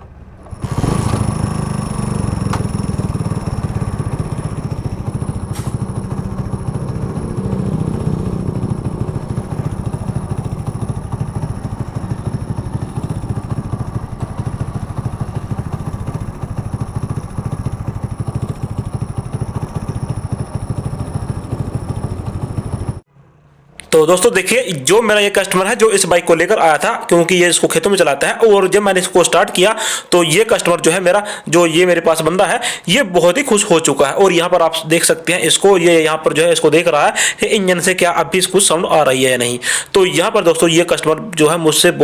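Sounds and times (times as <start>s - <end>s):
motorcycle engine idling: 0.1s - 23.0s.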